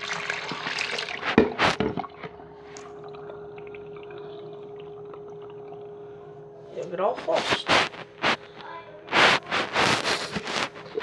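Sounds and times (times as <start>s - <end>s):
toilet flushing gush: 0.0s - 6.3s
water trickling: 0.0s - 6.4s.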